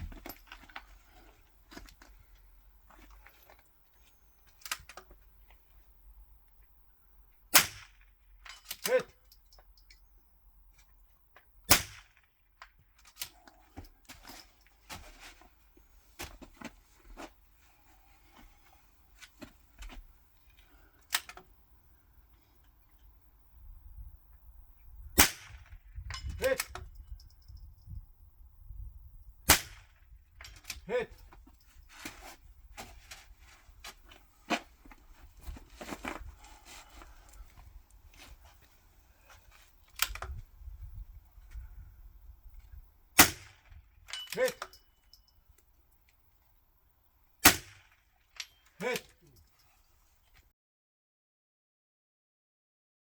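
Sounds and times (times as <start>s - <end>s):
rifle shot crack: 11.7s - 12.2s, 25.2s - 25.7s, 29.5s - 30.0s, 43.2s - 43.6s, 47.4s - 47.8s.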